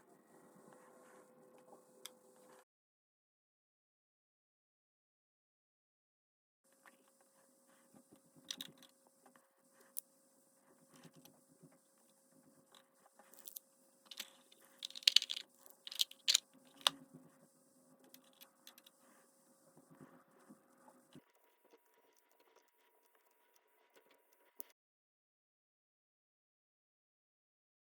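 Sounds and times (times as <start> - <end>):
plastic toy pieces clicking: 8.5 - 8.9, 13.4 - 16.9
packaging crinkling: 13.4 - 16.9.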